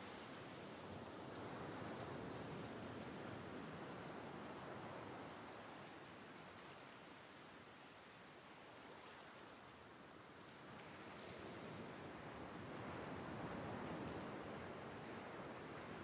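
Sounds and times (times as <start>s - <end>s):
gentle surf on a beach: 0.0s - 16.0s.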